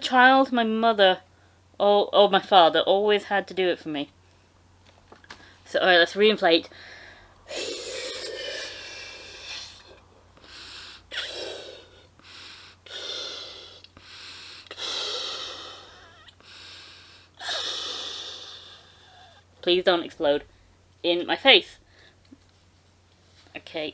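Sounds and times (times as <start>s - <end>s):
blowing air into balloon: 7.5s - 19.4s.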